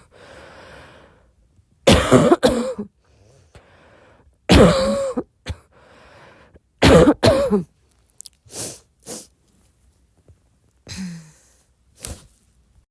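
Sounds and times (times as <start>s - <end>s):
woman coughing: 1.9s - 2.9s, 4.5s - 5.7s, 6.8s - 7.7s.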